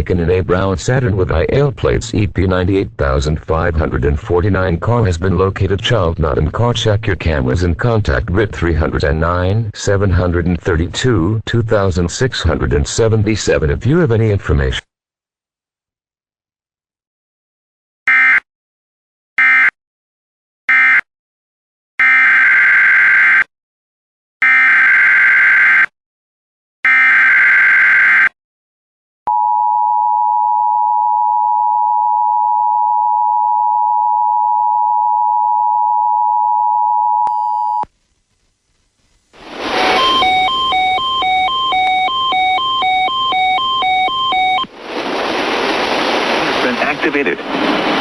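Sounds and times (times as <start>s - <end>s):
screeching data bursts: 39.6s - 44.6s
two-tone attention signal: 39.7s - 44.7s.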